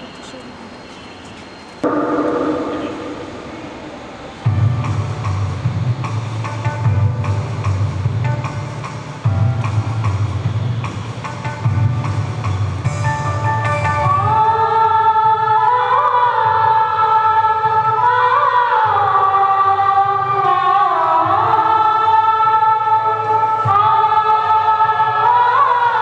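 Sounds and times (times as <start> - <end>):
low steady accompaniment: 1.8 - 14.5
choir singing: 14.2 - 26.0.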